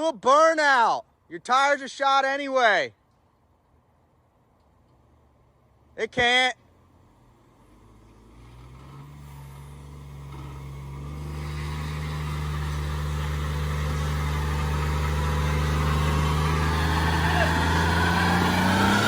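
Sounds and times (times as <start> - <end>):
vehicle engine revving: 6.7 - 19.0
rushing noise of burnout: 8.2 - 19.0.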